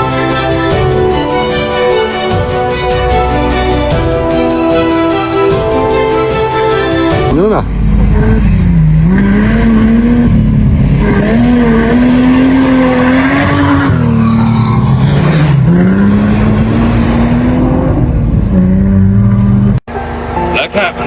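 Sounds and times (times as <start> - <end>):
rally car engine revving: 6.9 - 21.0.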